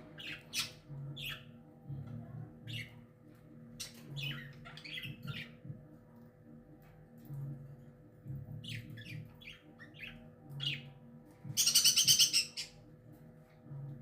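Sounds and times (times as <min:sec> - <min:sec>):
parakeet chirping: 0:00.2 - 0:01.5, 0:11.6 - 0:12.8.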